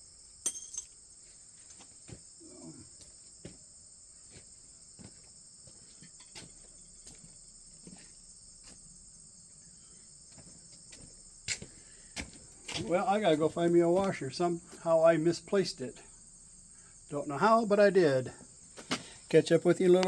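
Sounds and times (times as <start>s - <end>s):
high-pitched insect chorus: 0.0s - 20.0s.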